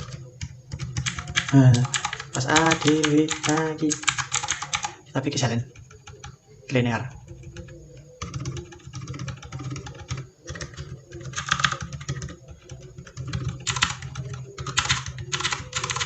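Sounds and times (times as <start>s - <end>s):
typing on mechanical keyboard: 0.0s - 16.0s.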